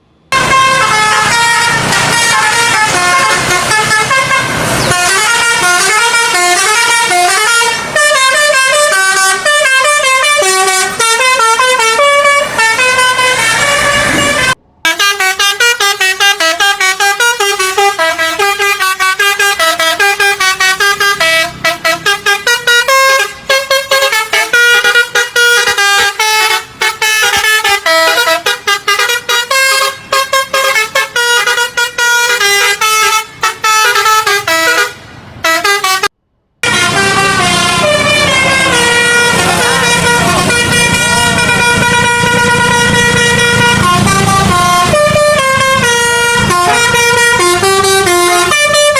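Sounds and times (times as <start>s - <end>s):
multi-tone bus horn tune: 0.0s - 48.9s.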